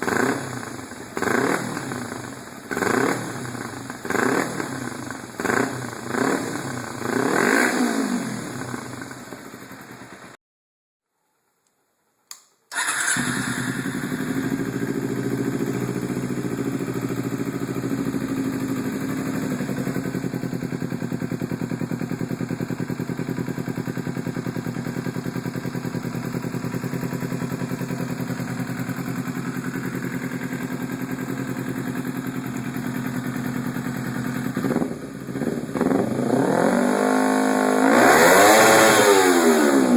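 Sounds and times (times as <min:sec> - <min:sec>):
motorcycle engine revving and idling: 0:00.0 - 0:10.4, 0:12.7 - 0:39.9.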